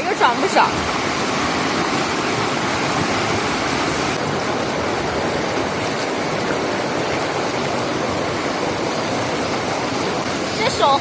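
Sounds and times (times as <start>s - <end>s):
river rushing: 0.0s - 11.0s.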